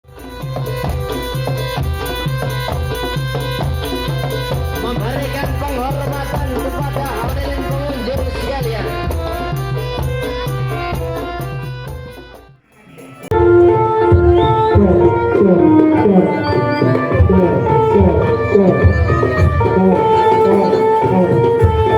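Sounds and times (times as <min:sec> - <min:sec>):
drums: 0:00.0 - 0:21.9
gong-chime instruments: 0:12.7 - 0:21.9
wavering melody line: 0:12.8 - 0:21.9.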